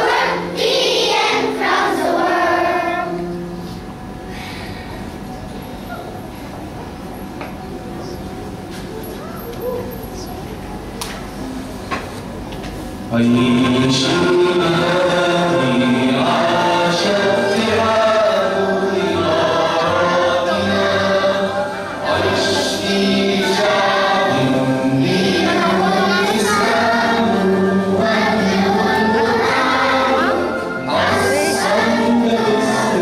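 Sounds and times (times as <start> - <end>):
choir singing: 0.0 - 3.3, 13.1 - 33.0.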